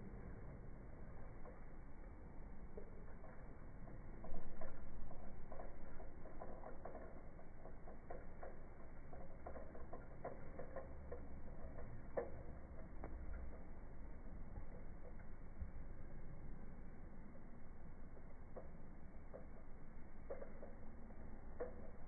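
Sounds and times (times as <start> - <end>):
toy car clicking and tapping: 2.8 - 13.6, 20.3 - 22.0.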